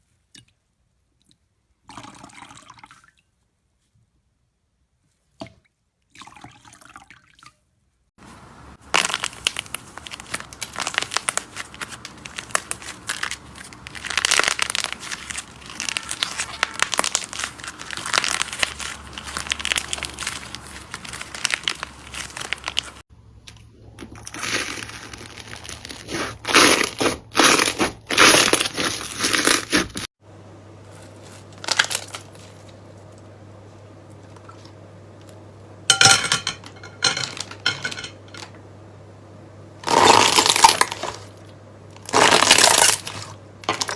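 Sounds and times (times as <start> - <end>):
slime squeezed crackling and popping: 8.4 - 23.0, 39.8 - 41.3, 42.0 - 43.9.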